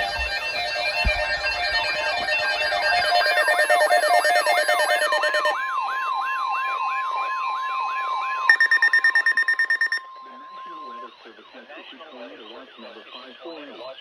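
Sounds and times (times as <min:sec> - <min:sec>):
fast-pulsing high beep: 0:00.0 - 0:05.6, 0:08.5 - 0:10.0
steady alert tone: 0:01.8 - 0:05.6, 0:08.5 - 0:10.0
yelping siren sweep: 0:01.8 - 0:05.6.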